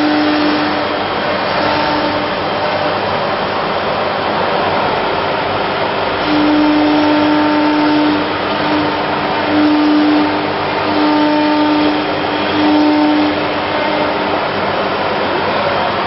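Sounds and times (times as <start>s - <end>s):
machine hum: 0.0s - 16.0s
router machine rushing noise: 0.0s - 16.0s.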